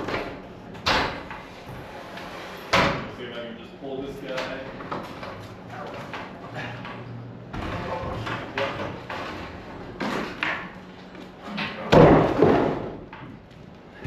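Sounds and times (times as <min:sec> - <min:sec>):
heavy wood thud: 0:11.9 - 0:13.0.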